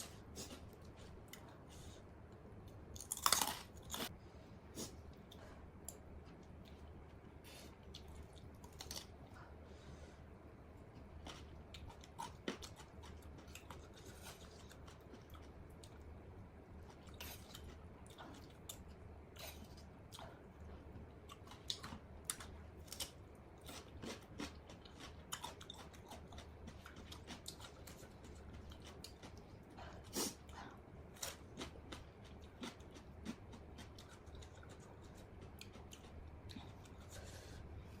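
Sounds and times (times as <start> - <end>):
person chewing crunchy salad: 0.0 - 2.0, 3.0 - 4.1, 7.6 - 9.2, 11.0 - 16.0, 16.8 - 30.5, 31.2 - 37.4.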